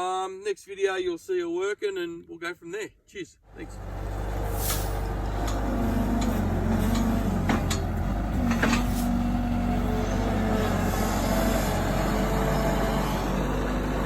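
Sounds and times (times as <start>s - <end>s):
machine engine humming: 3.5s - 14.0s.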